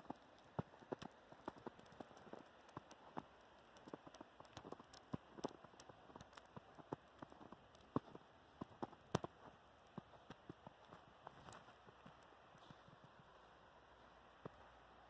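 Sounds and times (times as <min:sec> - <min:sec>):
snow and ice tapping: 0:00.0 - 0:15.0
soft hiss: 0:00.0 - 0:15.0.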